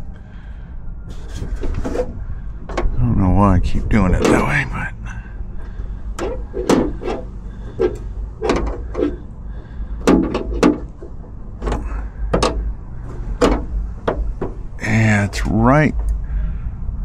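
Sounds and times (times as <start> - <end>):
steady low hum: 0.0 - 17.0
metal latch clicks and knocks: 6.2 - 9.2, 10.0 - 14.7.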